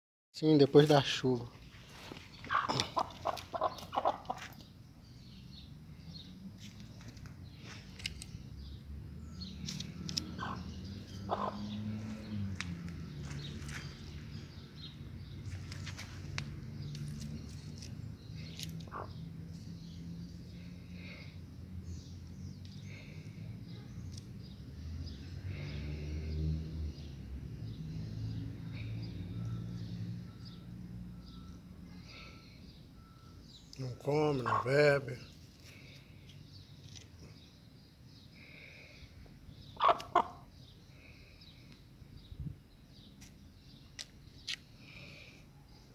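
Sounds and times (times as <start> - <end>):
birds chirping: 0.4 - 45.9
chickens clucking: 2.3 - 4.7, 11.3 - 11.8, 34.3 - 34.8, 39.8 - 40.4
faint chirps: 28.7 - 36.0.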